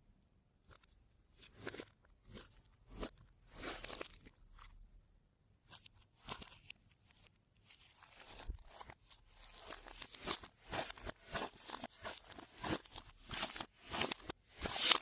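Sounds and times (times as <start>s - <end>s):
slime crackling and popping: 9.5s - 15.0s.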